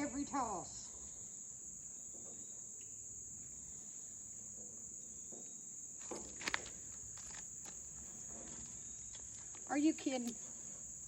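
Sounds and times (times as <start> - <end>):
insects chirring: 0.0 - 11.0.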